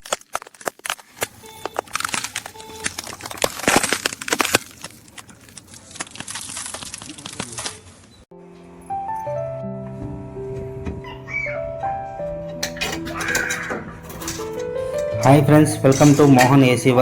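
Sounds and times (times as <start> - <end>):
rapid clicks and crackling: 0.0 - 8.2
music: 8.3 - 17.0.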